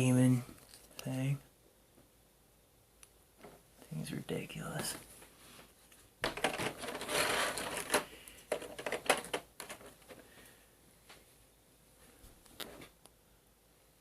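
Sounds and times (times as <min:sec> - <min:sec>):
plastic packaging rustling: 0:06.3 - 0:10.2.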